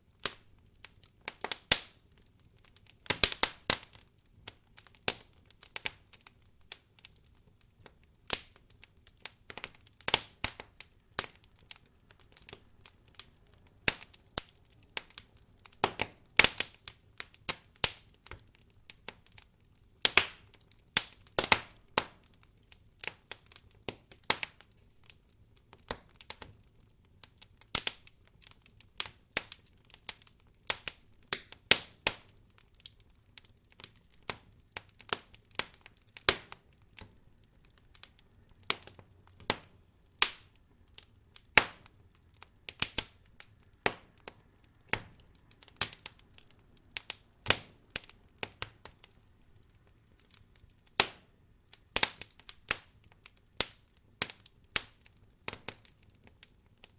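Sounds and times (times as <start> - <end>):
campfire crackling and popping: 0.0 - 56.9
faint fire hiss: 0.0 - 56.9.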